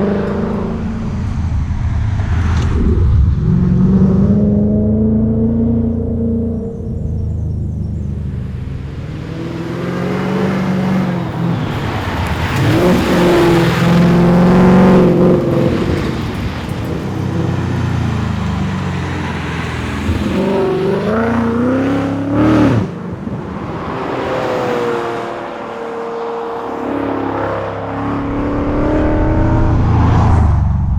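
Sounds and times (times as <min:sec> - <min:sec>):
car engine revving hard: 0:08.9 - 0:23.0.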